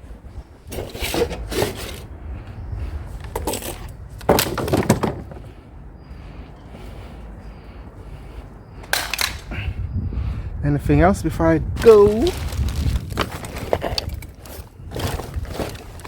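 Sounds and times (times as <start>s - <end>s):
steady low rumble: 0.0s - 16.0s
metal and plastic clattering: 0.7s - 2.1s, 3.2s - 5.5s, 11.8s - 16.0s.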